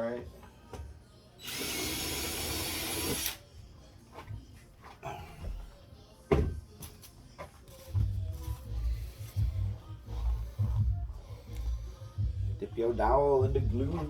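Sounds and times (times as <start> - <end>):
power drill boring into wood: 1.4 - 3.4.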